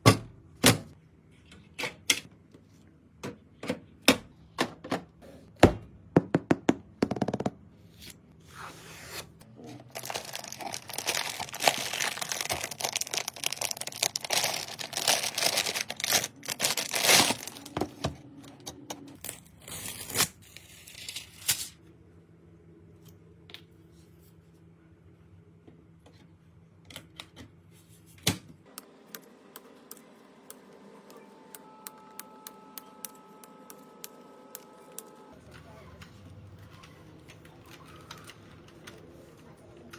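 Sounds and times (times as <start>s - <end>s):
plastic crinkling and tearing: 9.6s - 18.0s.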